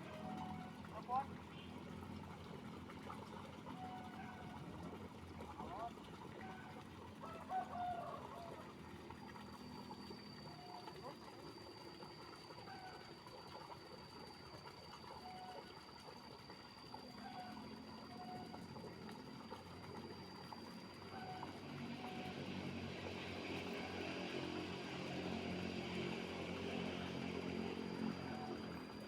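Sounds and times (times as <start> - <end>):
motor running: 9.2 - 29.0.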